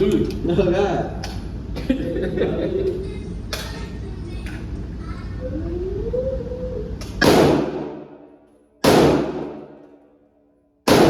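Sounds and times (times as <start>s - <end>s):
gunshots with echo: 7.2s - 8.2s, 8.8s - 9.9s.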